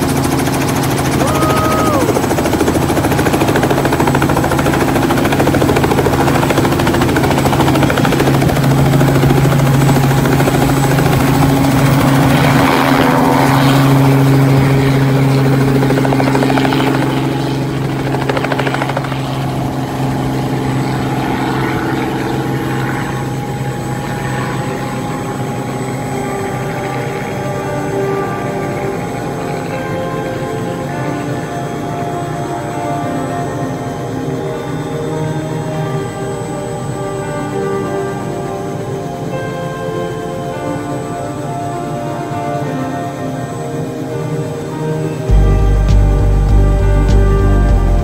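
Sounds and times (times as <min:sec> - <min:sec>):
helicopter engine and rotor hum: 0:00.0 - 0:48.0.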